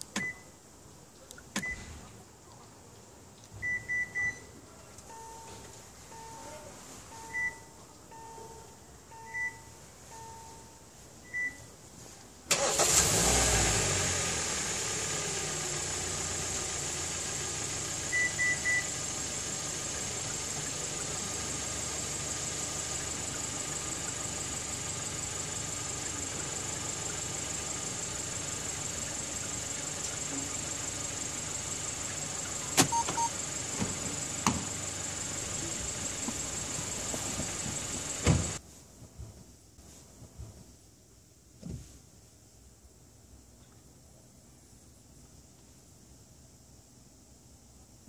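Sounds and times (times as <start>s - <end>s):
car engine cranking and idling: 12.5s - 38.6s
remote starter beeps: 18.1s - 18.9s, 32.8s - 33.4s.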